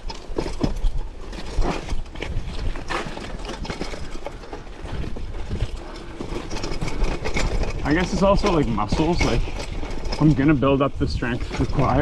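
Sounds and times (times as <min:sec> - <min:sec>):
mountain bike rattling over rocks: 0:00.0 - 0:12.0.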